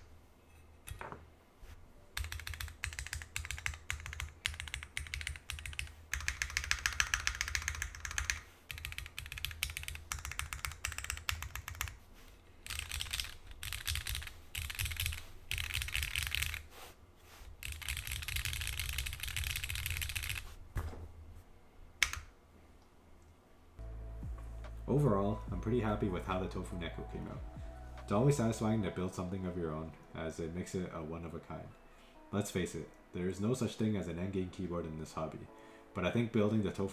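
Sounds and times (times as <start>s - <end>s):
mechanical keyboard typing: 2.2s - 12.0s, 12.6s - 16.7s, 17.6s - 20.4s, 22.0s - 22.3s.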